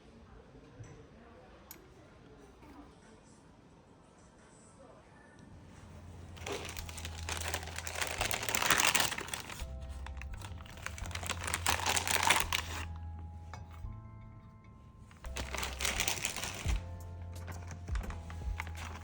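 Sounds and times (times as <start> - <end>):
soft background music: 0.0 - 19.0
crinkling and rustling: 5.6 - 13.9, 14.9 - 19.0.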